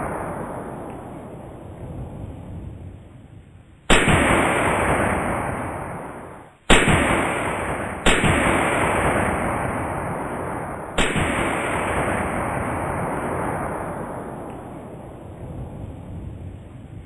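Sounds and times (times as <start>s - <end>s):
anti-tank rifle shots with echo: 0.0s - 1.8s, 3.9s - 15.4s.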